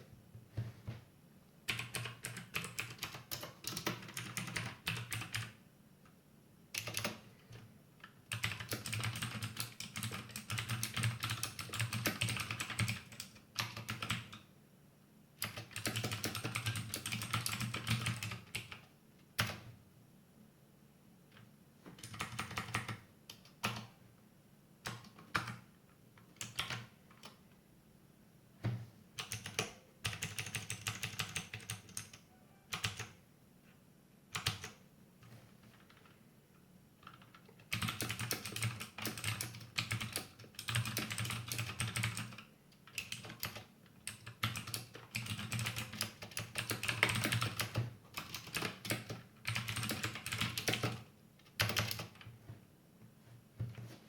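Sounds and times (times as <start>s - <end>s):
mechanical keyboard typing: 1.7s - 5.6s, 6.7s - 7.2s, 8.0s - 14.4s, 15.4s - 18.8s, 19.4s - 19.7s, 22.0s - 23.9s, 26.3s - 27.4s, 29.2s - 33.2s, 34.3s - 34.8s, 37.0s - 52.3s.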